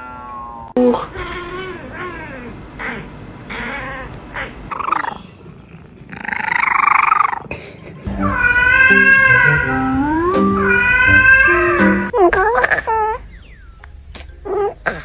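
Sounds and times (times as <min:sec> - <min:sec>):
cat meowing: 0:08.3 - 0:09.8, 0:10.6 - 0:13.2.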